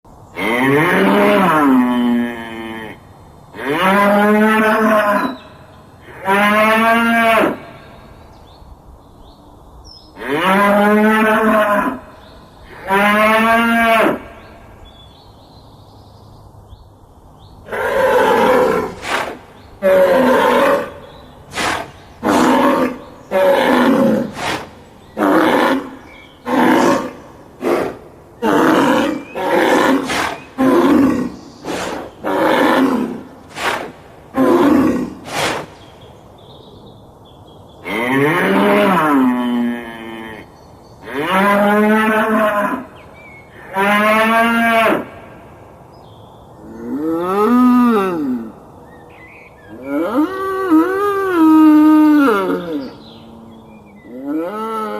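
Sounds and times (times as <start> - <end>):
bull bellowing: 17.7 - 35.6.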